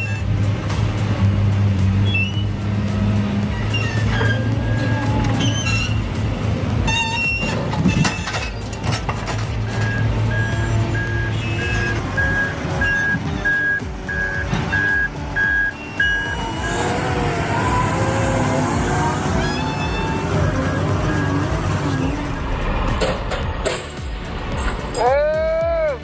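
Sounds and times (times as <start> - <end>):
heavy vehicle engine running: 0.0 - 25.0
reversing alarm beeping: 9.8 - 22.7.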